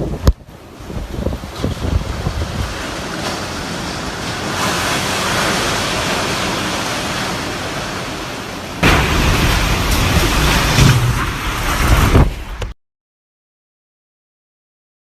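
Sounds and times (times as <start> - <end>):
wind buffeting the microphone: 0.0 - 7.8
strong wind rushing: 0.0 - 12.8.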